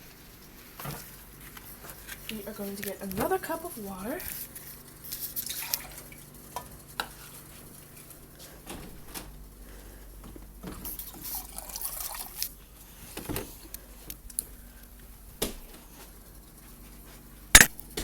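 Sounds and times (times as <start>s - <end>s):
water pouring into a cup: 11.3s - 12.5s.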